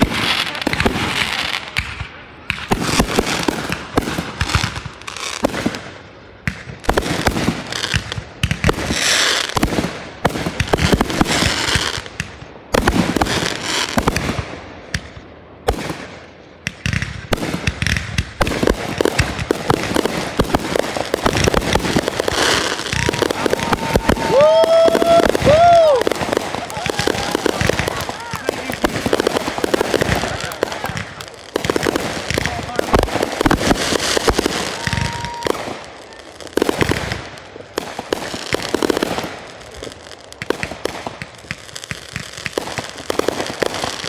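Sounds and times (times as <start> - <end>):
fireworks banging and crackling: 0.0 - 44.0
fireworks hissing: 18.4 - 44.0.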